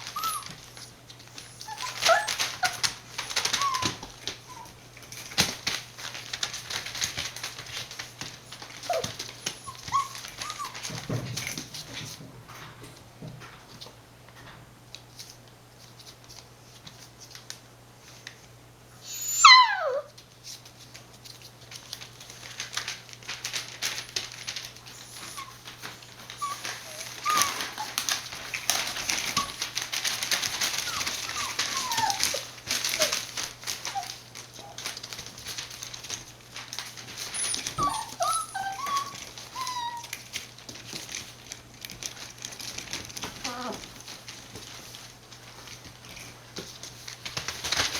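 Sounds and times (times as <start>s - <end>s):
puppies whining and whimpering: 0.0s - 4.8s, 8.4s - 11.6s, 19.0s - 20.2s, 24.3s - 35.0s, 37.2s - 40.4s, 43.2s - 44.0s
puppy yelp: 0.0s - 4.8s, 8.8s - 11.2s, 19.0s - 20.2s, 24.4s - 35.0s, 37.2s - 40.4s, 43.2s - 43.9s
rustling and scratching: 0.0s - 18.5s, 20.2s - 47.9s.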